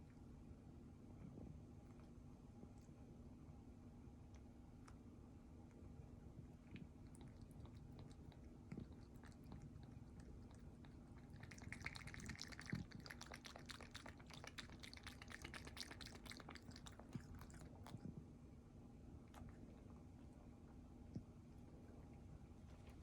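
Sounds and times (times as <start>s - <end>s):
cat lapping water: 5.6s - 18.3s.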